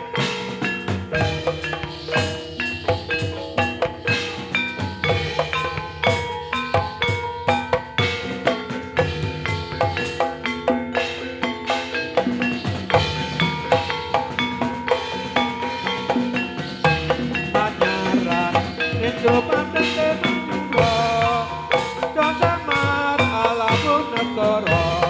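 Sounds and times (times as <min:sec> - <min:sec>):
drum beats: 0:00.0 - 0:25.0
metallophone notes: 0:00.0 - 0:25.0.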